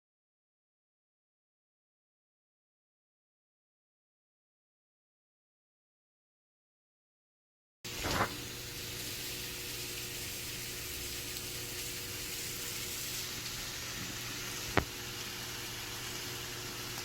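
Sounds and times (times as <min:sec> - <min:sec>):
food sizzling in frying pan: 0:07.9 - 0:17.0.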